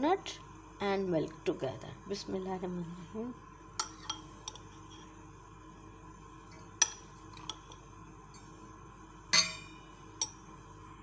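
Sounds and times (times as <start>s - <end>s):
utensil clinking against bowl: 9.3s - 10.4s.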